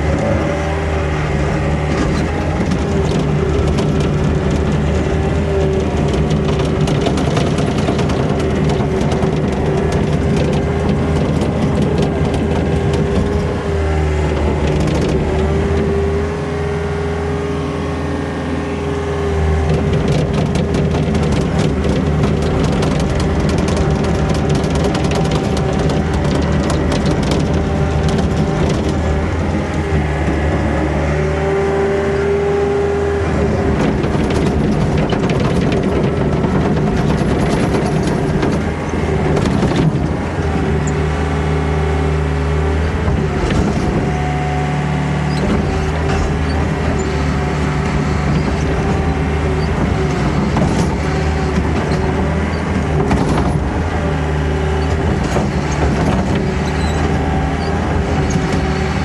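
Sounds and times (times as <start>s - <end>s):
earthmover diesel engine under load: 0.0s - 59.0s.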